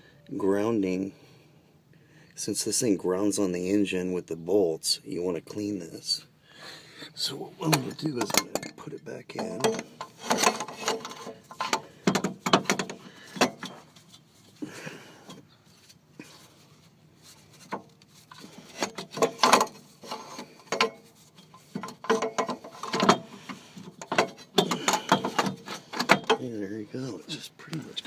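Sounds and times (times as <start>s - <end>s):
metal clunks and scrapes: 7.6s - 14.6s, 15.2s - 27.4s.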